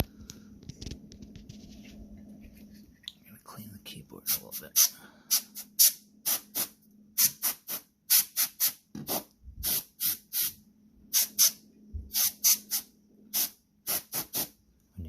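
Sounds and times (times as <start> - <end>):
compressed air hissing puffs: 4.8 - 14.6.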